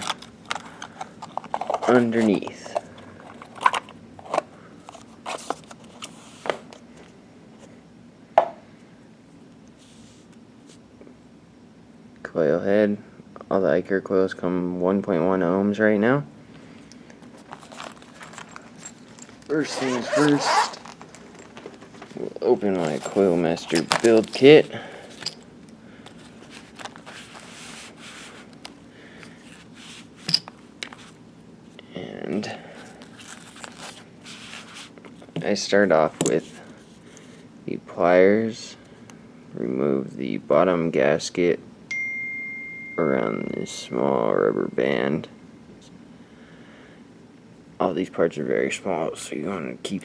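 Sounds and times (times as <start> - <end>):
rustling and scraping: 0.0 - 7.8, 17.2 - 31.2, 32.7 - 35.5.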